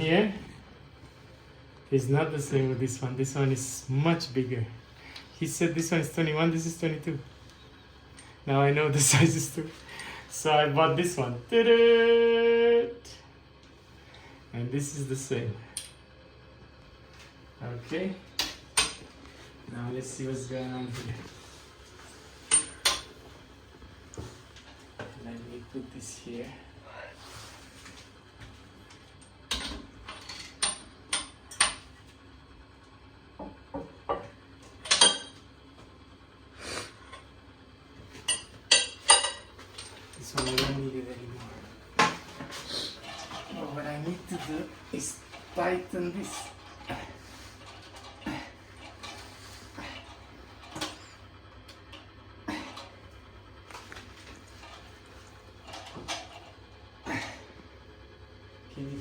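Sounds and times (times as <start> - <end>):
steady low hum: 0.0 - 59.0
hard parts clinking and knocking: 22.5 - 23.1, 29.5 - 31.8, 34.8 - 35.4, 38.2 - 40.9.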